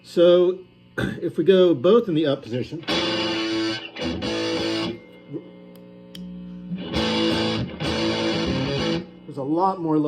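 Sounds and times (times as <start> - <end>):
fuzzed electric guitar chord: 2.8 - 10.0.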